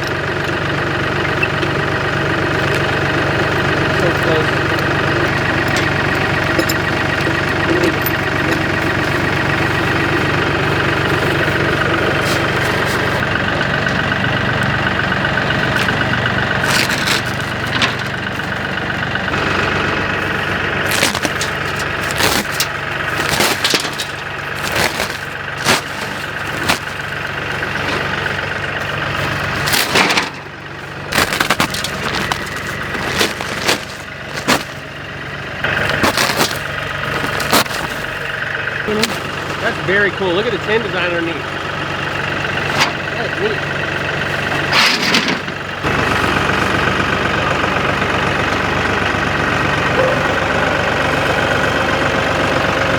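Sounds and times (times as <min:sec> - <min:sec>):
engine idling: 0:00.0 - 0:52.9
sharp knocks and clatters: 0:15.5 - 0:34.8, 0:44.4 - 0:46.4.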